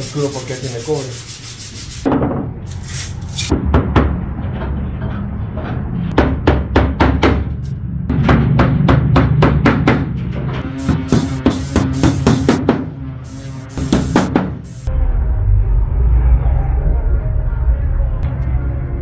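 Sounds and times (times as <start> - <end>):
sharp knocks: 6.1 - 10.2.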